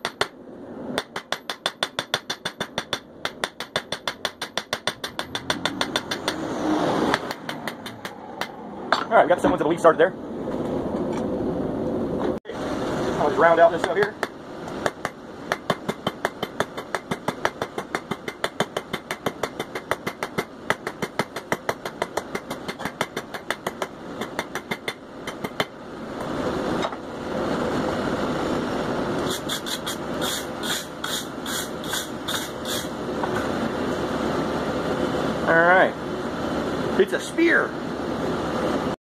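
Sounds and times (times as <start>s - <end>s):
hammer striking steel on anvil: 0.0s - 0.4s, 1.0s - 6.5s, 7.1s - 9.1s, 13.8s - 25.7s
steady rushing noise: 4.3s - 39.0s.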